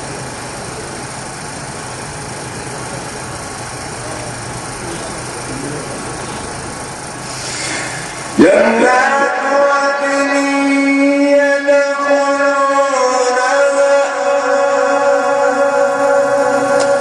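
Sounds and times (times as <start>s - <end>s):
person chanting recitation: 8.4s - 17.0s.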